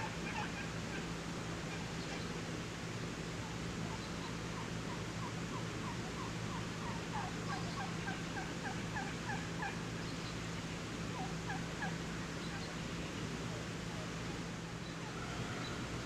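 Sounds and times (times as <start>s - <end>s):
turkey yelping: 0.0s - 1.0s, 3.9s - 9.8s, 11.1s - 12.7s
steady low hum: 0.0s - 16.0s.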